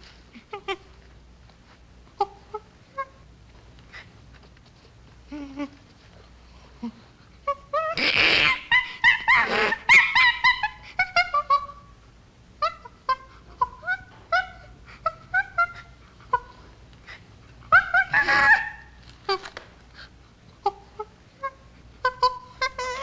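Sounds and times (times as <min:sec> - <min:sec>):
chimpanzee screaming: 0:07.5 - 0:11.9, 0:12.6 - 0:16.7, 0:17.7 - 0:19.5, 0:20.6 - 0:23.0
chimpanzee short high calls: 0:17.7 - 0:19.4.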